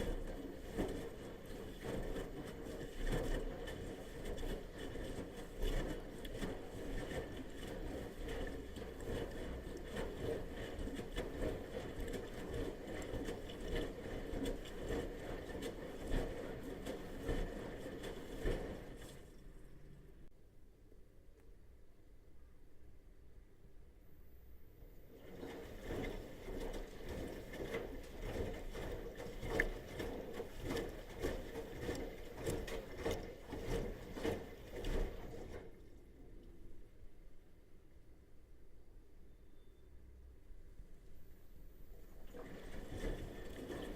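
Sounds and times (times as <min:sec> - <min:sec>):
washing machine churning: 0:00.0 - 0:20.3, 0:25.1 - 0:35.8, 0:42.2 - 0:43.9
water sloshing: 0:00.0 - 0:20.3, 0:25.1 - 0:36.8, 0:41.9 - 0:43.9.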